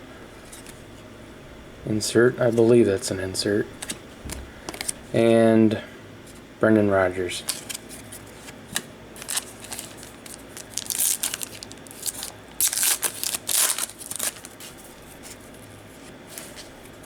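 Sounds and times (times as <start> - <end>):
foil wrapper crinkling and tearing: 9.2 - 15.3.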